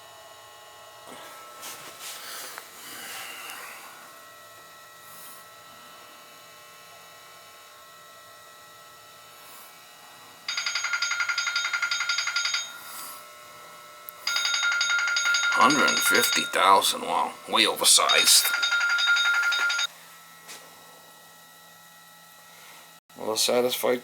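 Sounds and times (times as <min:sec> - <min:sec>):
telephone ringing electronic trill: 0:10.5 - 0:12.8, 0:14.3 - 0:19.9.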